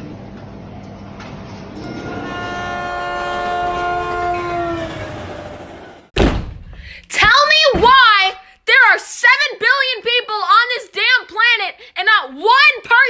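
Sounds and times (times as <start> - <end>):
passing train rumble: 1.7 - 6.2
train horn: 1.8 - 6.1
loud thump: 6.2 - 6.7.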